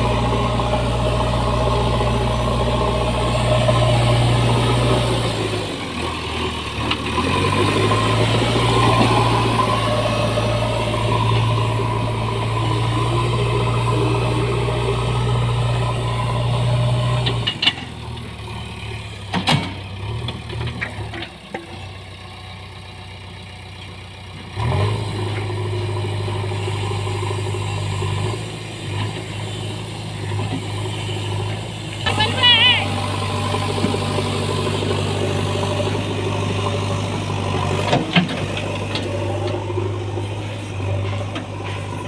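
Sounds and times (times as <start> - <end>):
diesel engine running: 0.0 - 42.0.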